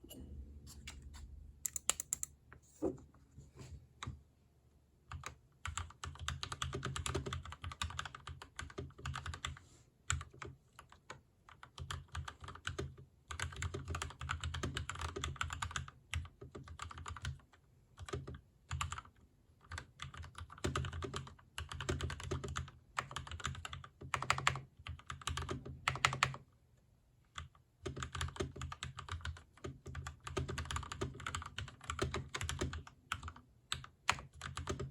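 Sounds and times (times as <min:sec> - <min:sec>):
mechanical keyboard typing: 0:01.6 - 0:02.3, 0:05.1 - 0:26.4, 0:27.4 - 0:34.9.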